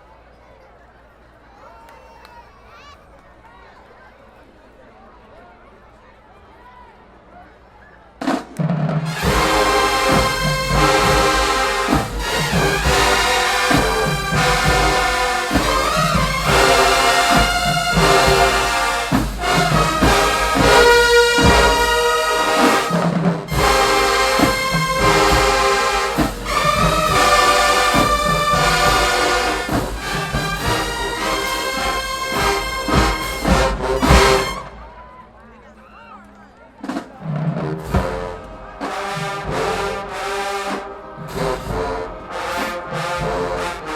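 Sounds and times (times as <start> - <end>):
steady drum beat: 8.2 - 35.0, 36.8 - 43.9
brass section playing chords: 9.0 - 35.0, 37.6 - 43.9.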